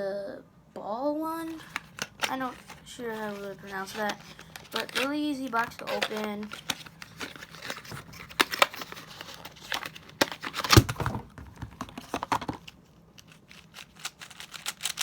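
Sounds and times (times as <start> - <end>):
packaging crinkling and rustling: 1.4 - 15.0.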